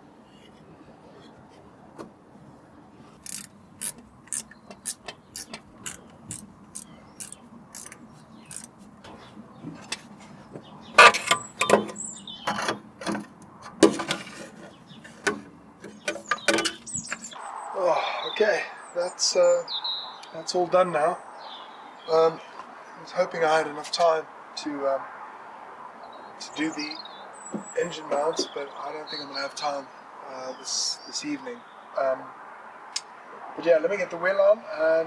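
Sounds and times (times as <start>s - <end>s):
sharp tool clicks: 3.2s - 8.7s.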